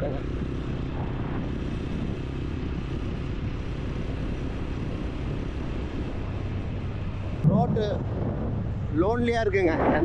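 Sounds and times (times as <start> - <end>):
motorcycle engine running: 0.0 - 9.7
road noise: 0.0 - 10.0
wind: 0.0 - 10.0.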